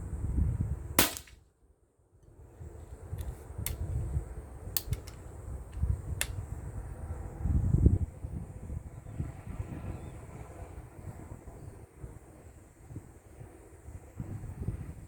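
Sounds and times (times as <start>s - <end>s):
wind rumbling on microphone: 0.0s - 1.4s, 2.3s - 15.0s
air rifle shot: 1.0s - 1.3s
rifle reloading clicks: 4.8s - 5.2s.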